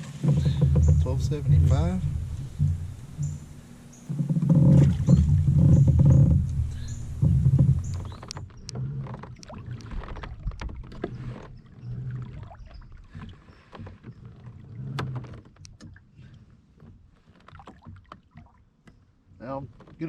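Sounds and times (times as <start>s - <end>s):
low rumble: 0.0s - 8.3s
knocks against kayak hull: 0.0s - 8.4s.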